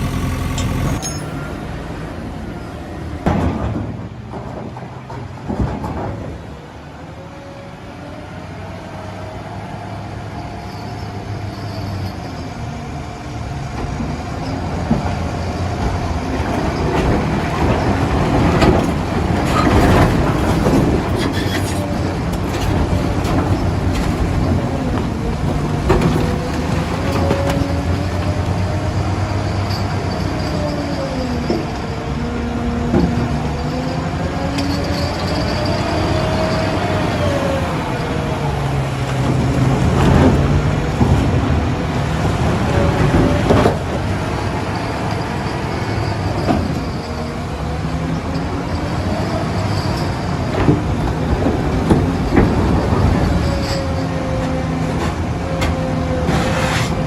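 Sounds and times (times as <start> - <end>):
hydraulic whine: 0.0 - 2.1
diesel engine running: 0.0 - 3.1.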